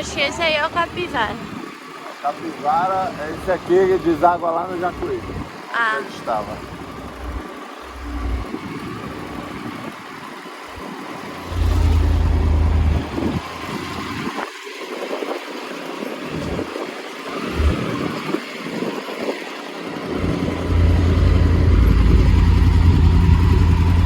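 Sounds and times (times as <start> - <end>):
motorcycle running at low speed: 0.0 - 24.0
wind buffeting microphone: 6.7 - 24.0.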